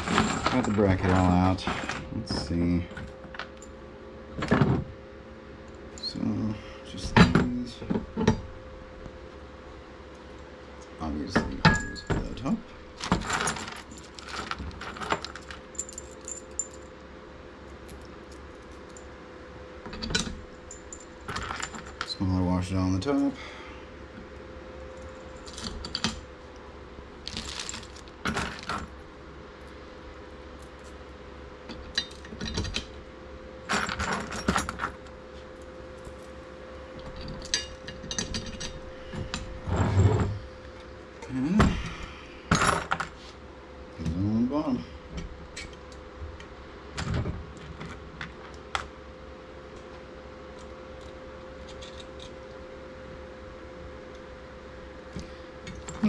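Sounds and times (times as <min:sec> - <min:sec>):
bolts and washers clinking: 0:00.0 - 0:03.7, 0:11.3 - 0:16.9, 0:19.8 - 0:22.3, 0:25.0 - 0:26.3, 0:27.2 - 0:29.0, 0:31.7 - 0:33.0, 0:33.7 - 0:36.3, 0:37.0 - 0:43.1
faint steady hum: 0:00.0 - 0:56.0.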